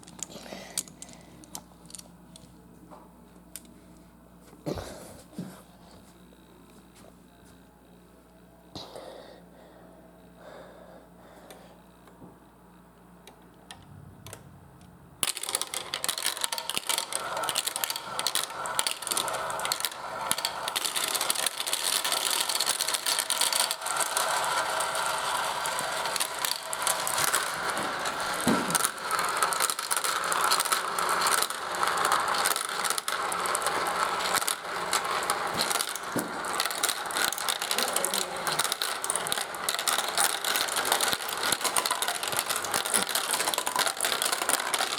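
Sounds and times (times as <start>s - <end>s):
marbles clattering through plastic run: 0.0s - 2.5s, 15.2s - 44.9s.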